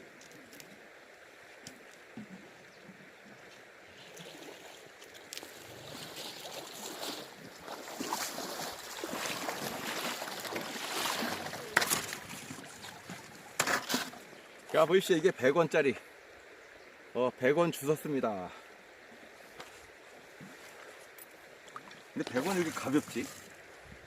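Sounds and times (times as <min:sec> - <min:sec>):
river water splashing: 0:03.4 - 0:17.1, 0:18.3 - 0:24.0.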